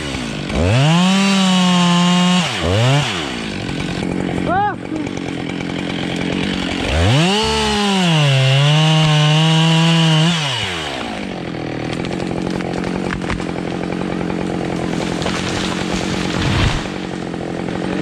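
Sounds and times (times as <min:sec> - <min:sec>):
chainsaw revving and cutting wood: 0:00.0 - 0:18.0.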